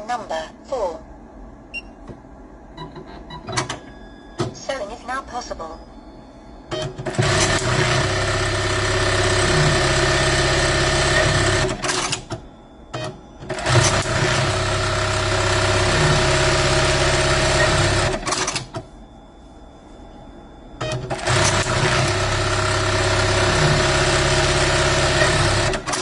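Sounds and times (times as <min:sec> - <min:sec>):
faint machine hum: 0:00.0 - 0:26.0
sewing machine running: 0:07.0 - 0:12.2, 0:13.5 - 0:18.6, 0:21.1 - 0:26.0.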